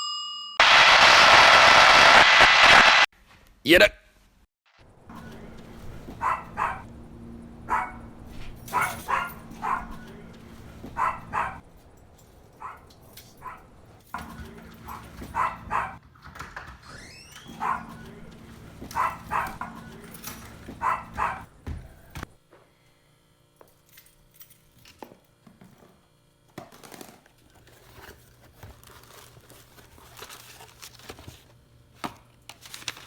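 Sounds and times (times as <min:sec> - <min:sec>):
steady low hum: 0:04.9 - 0:16.0
dog barking: 0:06.0 - 0:06.9, 0:07.6 - 0:11.6, 0:12.6 - 0:13.7, 0:14.7 - 0:16.0, 0:17.5 - 0:21.5.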